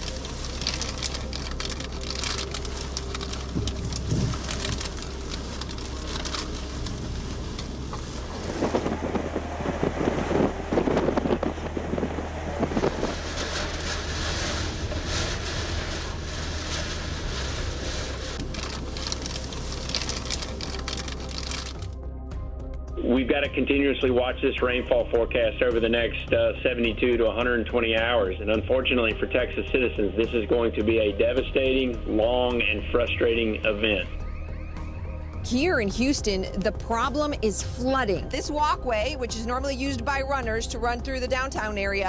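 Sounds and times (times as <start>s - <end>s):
heavy rain falling: 0.0s - 22.0s.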